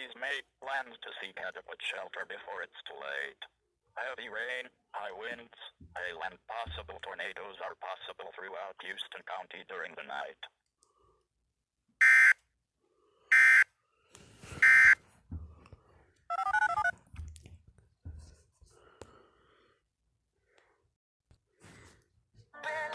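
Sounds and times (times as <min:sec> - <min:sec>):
faint scattered noises: 0:00.0 - 0:11.0.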